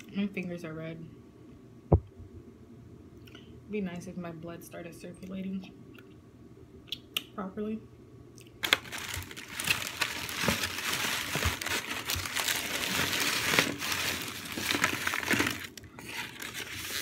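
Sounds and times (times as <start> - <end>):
food packaging crumpling: 8.6 - 17.0.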